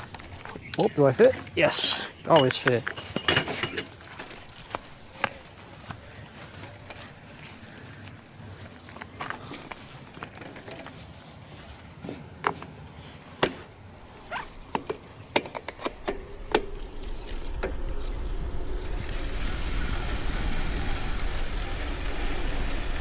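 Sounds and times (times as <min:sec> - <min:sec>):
bicycle rattling over rough ground: 0:00.0 - 0:23.0
wind noise: 0:16.1 - 0:23.0.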